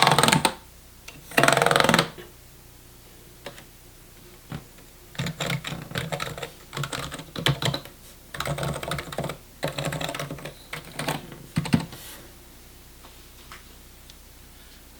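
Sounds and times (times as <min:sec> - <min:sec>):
mechanical keyboard typing: 0:00.0 - 0:00.6, 0:01.3 - 0:02.2, 0:05.2 - 0:12.0.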